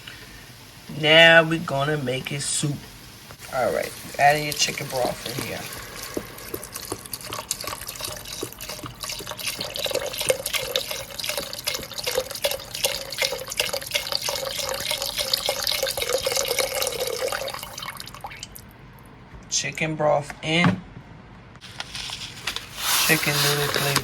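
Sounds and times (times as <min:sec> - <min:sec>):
broth pouring into pot: 0:03.1 - 0:18.7, 0:21.8 - 0:24.0.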